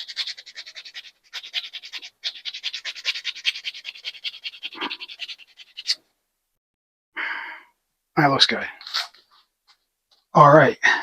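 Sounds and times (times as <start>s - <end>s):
sandpaper rubbing on metal: 0.0s - 6.0s.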